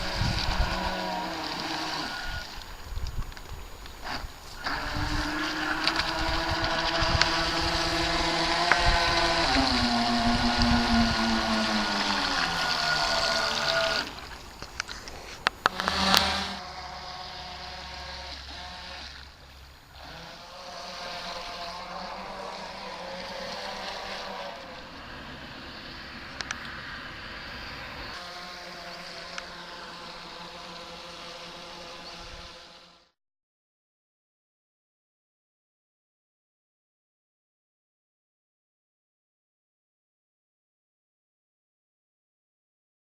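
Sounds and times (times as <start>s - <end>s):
electric boat motor whine: 0.0s - 33.2s.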